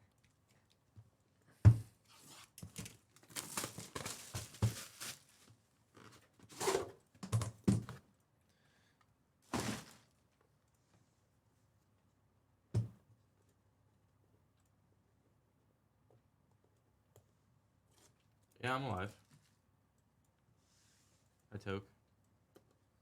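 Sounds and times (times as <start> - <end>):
packaging rustling: 2.6 - 6.7, 9.5 - 10.1
box thunk: 9.5 - 10.0
knocks on box: 12.8 - 13.0.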